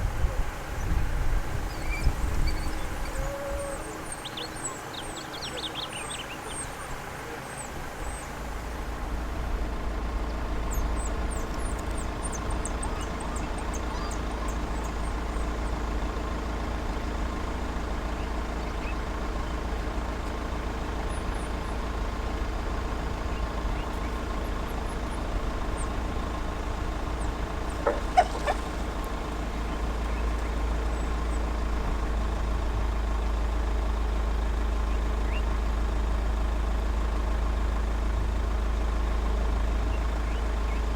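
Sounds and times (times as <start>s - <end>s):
large vehicle engine idling: 0.0s - 40.9s.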